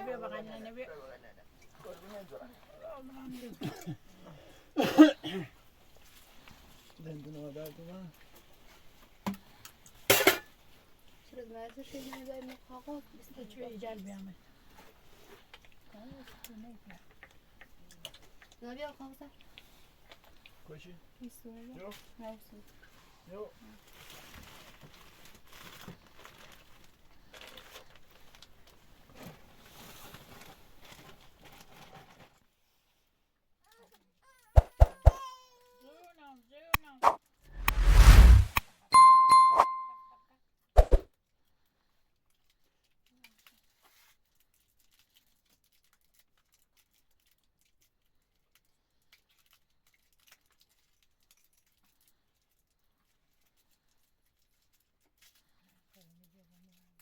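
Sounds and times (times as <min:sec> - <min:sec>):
paper rustling and crinkling: 0:23.8 - 0:32.4.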